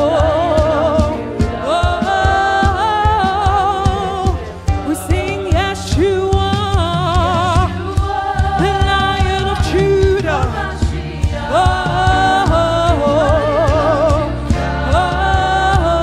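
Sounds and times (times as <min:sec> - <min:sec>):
live band with steady beat: 0:00.0 - 0:16.0
voices singing gospel: 0:00.0 - 0:16.0.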